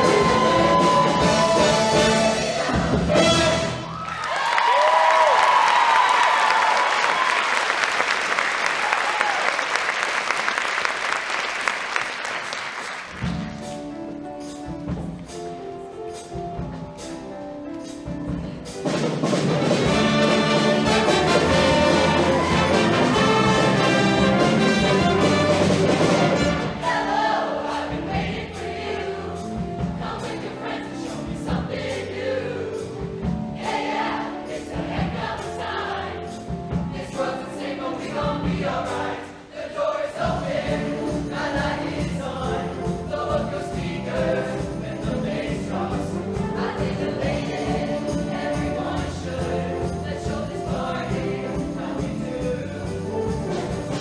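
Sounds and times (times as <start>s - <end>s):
audience applause: 0.0s - 2.1s, 3.8s - 13.3s, 20.5s - 25.9s
choir singing with accompaniment: 0.0s - 4.0s, 11.4s - 54.0s.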